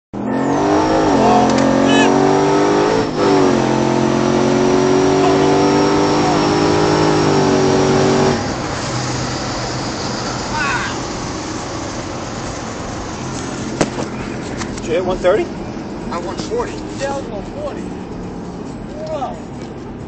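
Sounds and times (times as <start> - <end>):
car engine at full throttle: 0.2 - 20.0
high turbo whine: 0.2 - 20.0.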